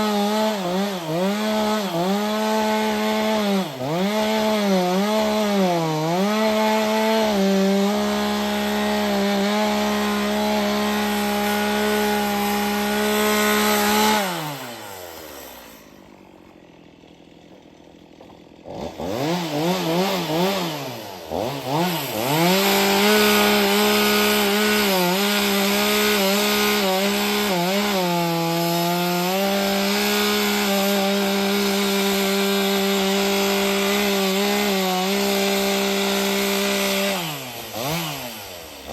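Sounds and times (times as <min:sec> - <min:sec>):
chainsaw cutting log: 0:00.0 - 0:38.9.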